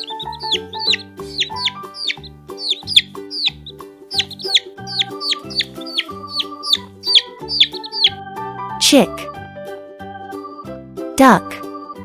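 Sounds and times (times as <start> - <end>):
baby chicks peeping: 0.0 - 8.2
children's music with bass line: 0.0 - 12.0.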